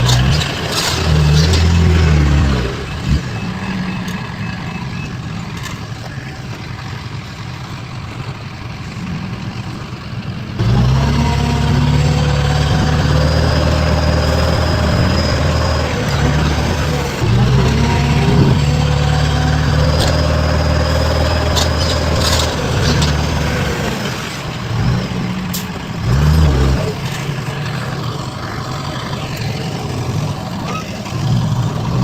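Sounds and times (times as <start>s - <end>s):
heavy machinery engines running: 0.0s - 32.0s
faint pulsed beeping: 2.6s - 6.4s.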